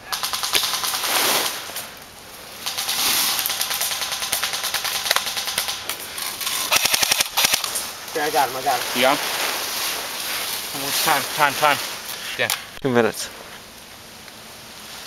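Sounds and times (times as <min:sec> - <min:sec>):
airsoft rifle full-auto firing: 0:02.6 - 0:05.9, 0:06.7 - 0:07.8.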